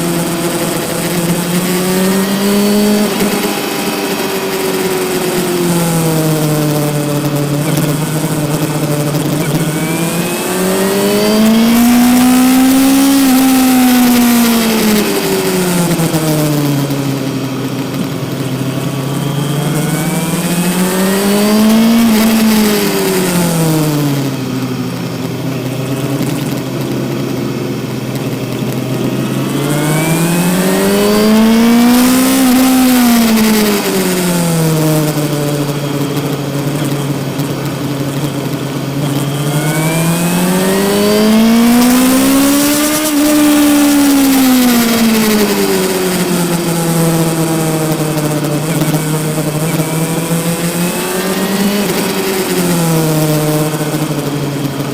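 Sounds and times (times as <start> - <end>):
motorcycle engine revving: 0.0 - 54.9.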